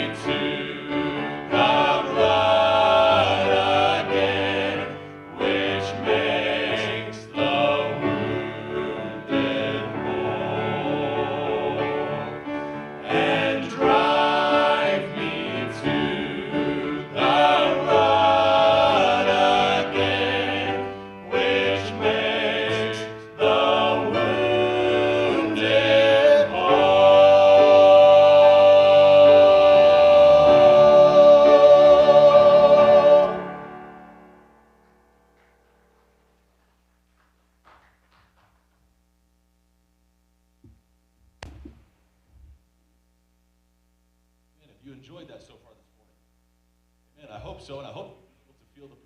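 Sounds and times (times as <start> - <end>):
vocal group singing gospel: 0.0 - 33.9.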